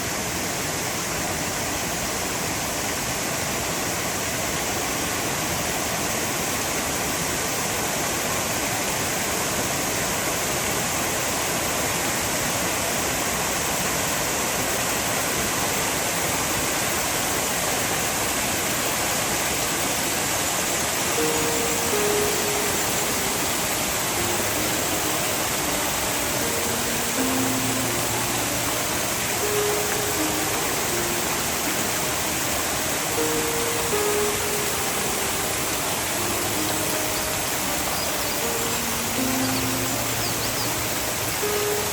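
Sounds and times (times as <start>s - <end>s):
waterfall rushing: 0.0s - 41.9s
soft background music: 16.2s - 41.9s.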